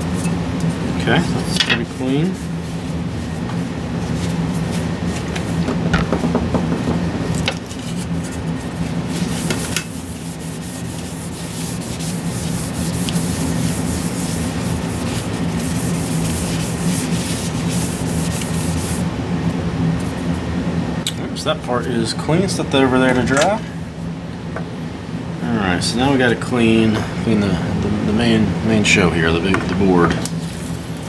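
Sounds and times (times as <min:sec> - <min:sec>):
steady low hum: 0:00.0 - 0:31.0
scratchy rubbing on metal plate: 0:07.6 - 0:19.1.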